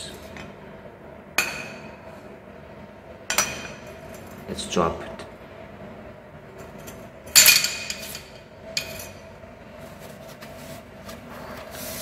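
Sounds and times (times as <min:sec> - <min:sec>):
rubbing and handling sounds: 0:09.7 - 0:12.0.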